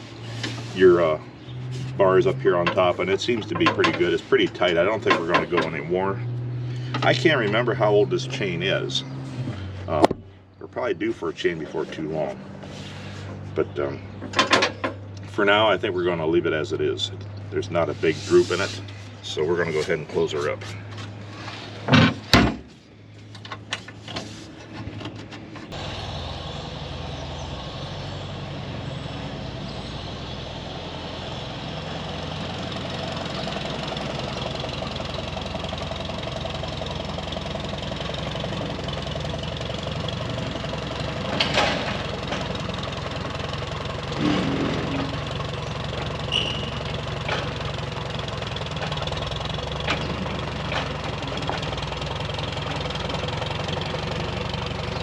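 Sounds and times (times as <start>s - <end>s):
diesel engine idling: 0.0s - 21.5s, 22.8s - 55.0s
metal clanks: 2.6s - 5.8s, 14.2s - 15.0s.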